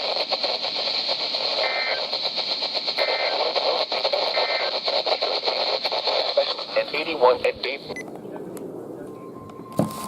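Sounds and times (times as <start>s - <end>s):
two-tone data bursts: 0.0s - 7.1s
radio reception hiss: 0.0s - 8.5s.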